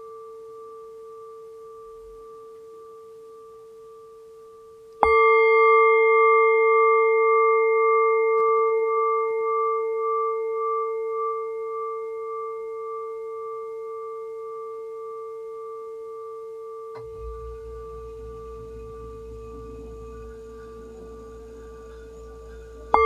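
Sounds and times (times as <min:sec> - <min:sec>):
meditation bell ringing: 0:00.0 - 0:23.0
low rumble: 0:17.0 - 0:23.0.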